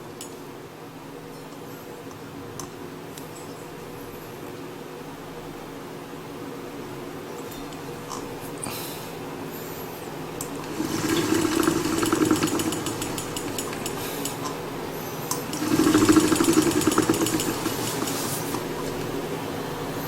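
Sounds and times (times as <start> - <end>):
bike trainer roller hum: 10.4 - 14.4, 15.0 - 19.4
fast rattle from bike trainer: 10.7 - 14.4, 15.4 - 18.8.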